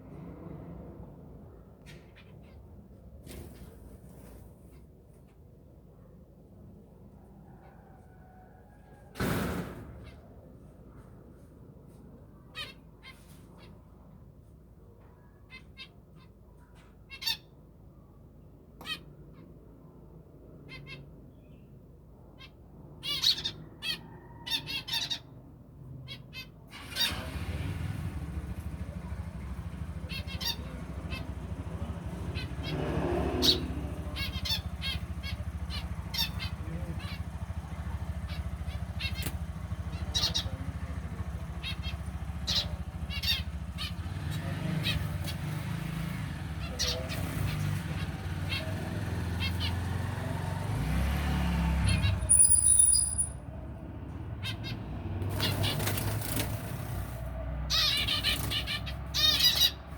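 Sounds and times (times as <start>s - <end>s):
finches chirping and squawking: 15.4s - 17.6s, 22.4s - 25.3s, 28.5s - 50.0s, 51.8s - 53.5s, 54.4s - 59.9s.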